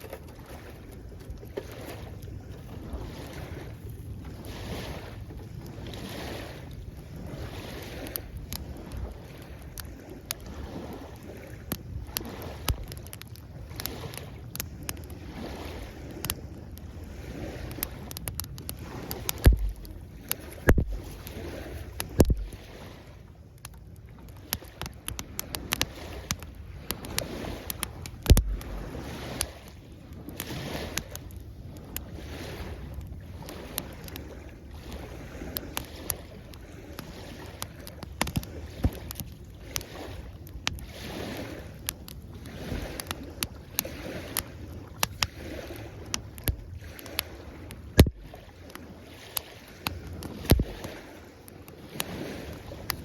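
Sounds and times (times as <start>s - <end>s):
waves washing onto shore: 0.0s - 53.0s
campfire wood crackling: 1.6s - 53.0s
heavy thumps: 19.4s - 19.9s, 20.7s - 21.0s, 28.3s - 28.6s.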